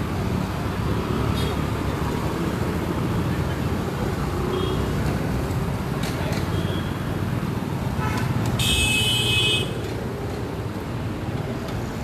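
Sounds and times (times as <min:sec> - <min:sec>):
street traffic rumble: 0:00.0 - 0:12.0.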